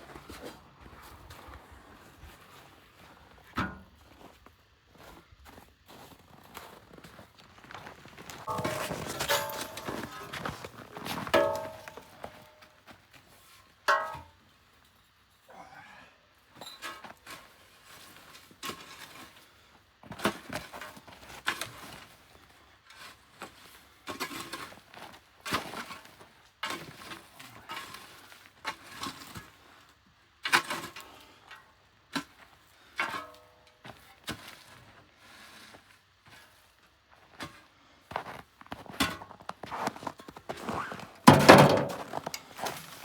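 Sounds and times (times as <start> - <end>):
hard objects knocking and scraping: 8.5 - 12.5, 41.3 - 42.5.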